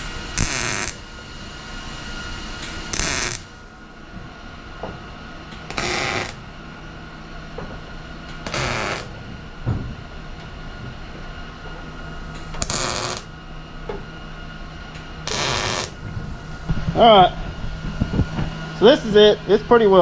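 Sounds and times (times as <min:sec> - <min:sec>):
welding crackle: 0:00.0 - 0:01.0, 0:02.9 - 0:03.6, 0:05.7 - 0:06.4, 0:08.4 - 0:09.1, 0:12.6 - 0:13.3, 0:15.2 - 0:16.0
steady low hum: 0:00.0 - 0:20.0.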